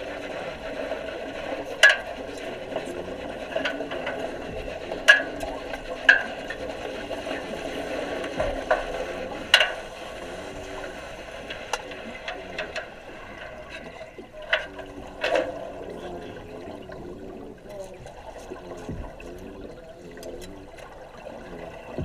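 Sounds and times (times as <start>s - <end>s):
underwater steady hiss: 0.0s - 22.0s
sharp clicks and knocks: 8.2s - 15.6s.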